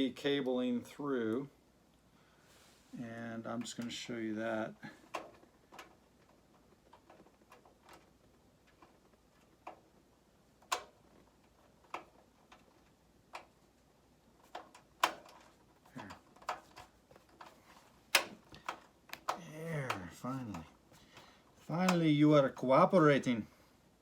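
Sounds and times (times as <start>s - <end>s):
screwdriver clicks and taps: 18.2s - 20.6s.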